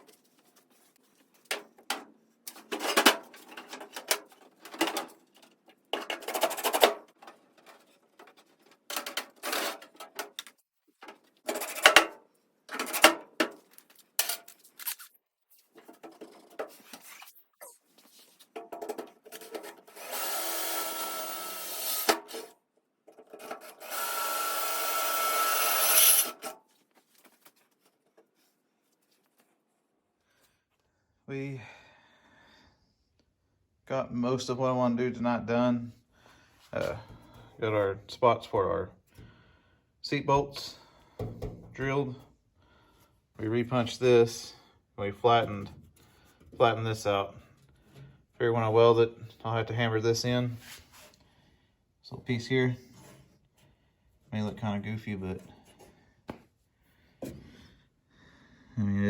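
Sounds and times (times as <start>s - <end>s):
electric drill whining: 19.9s - 22.5s, 23.8s - 26.5s.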